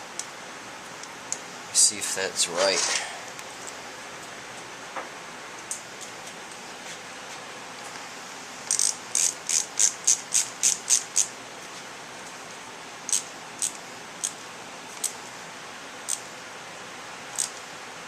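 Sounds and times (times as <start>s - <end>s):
hand ratchet clicking: 8.7s - 11.3s, 13.1s - 14.4s, 17.4s - 17.6s.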